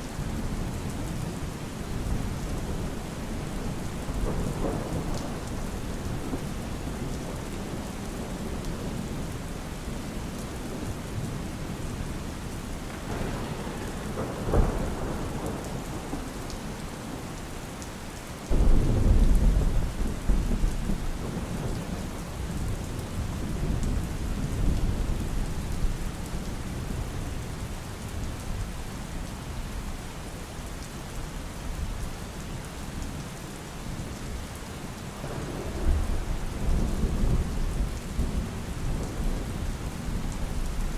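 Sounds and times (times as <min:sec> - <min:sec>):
heavy rain: 0:00.0 - 0:40.9
low thunder rumble: 0:18.5 - 0:26.0, 0:35.2 - 0:40.9.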